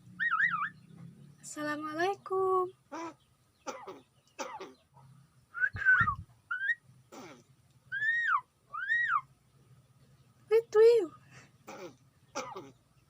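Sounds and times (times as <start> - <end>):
bird whistling: 0.2 - 0.8, 5.5 - 6.8, 7.9 - 9.3.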